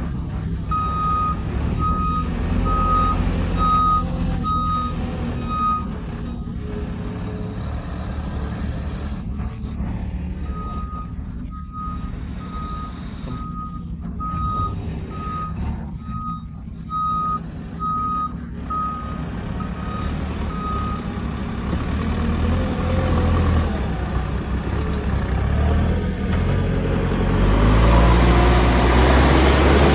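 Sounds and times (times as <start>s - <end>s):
diesel engine running: 0.0s - 29.9s
reversing alarm beeping: 0.6s - 7.8s, 10.3s - 21.2s.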